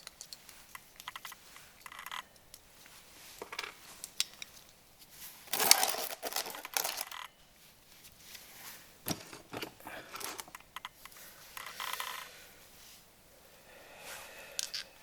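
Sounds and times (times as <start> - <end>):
metal parts and tools clinking: 0.0 - 2.6, 5.5 - 7.4
scraping rattle: 5.5 - 7.2.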